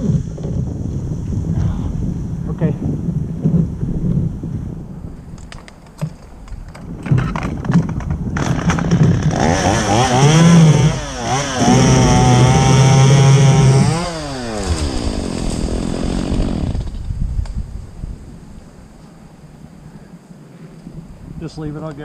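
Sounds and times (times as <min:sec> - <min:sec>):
chainsaw revving and cutting: 0:08.4 - 0:17.0.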